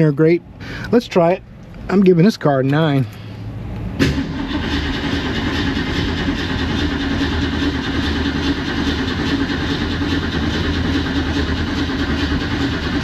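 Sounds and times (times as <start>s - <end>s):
starter motor cranking engine: 4.0s - 13.0s.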